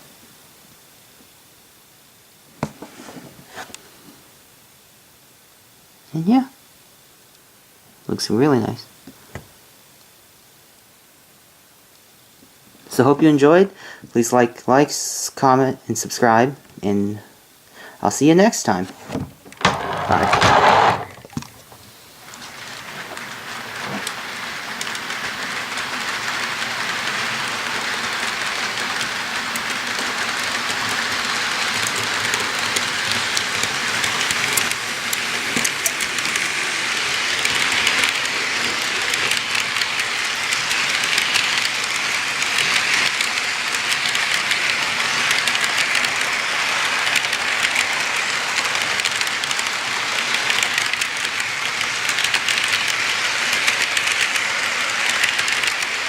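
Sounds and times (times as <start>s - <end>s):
railcar wheels rattling on rails: 22.3s - 56.0s.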